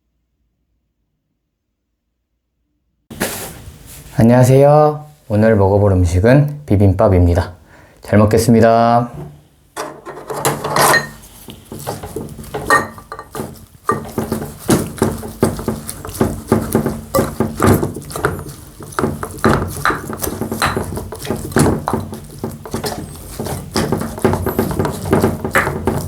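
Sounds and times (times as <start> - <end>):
spoon clinking and scraping in bowl: 9.8 - 26.0
close-up eating sounds: 11.1 - 26.0.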